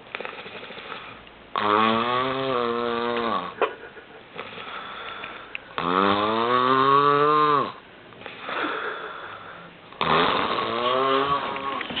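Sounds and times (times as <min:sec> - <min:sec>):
man snoring loudly: 0:00.2 - 0:03.6, 0:05.8 - 0:07.8, 0:10.0 - 0:11.9.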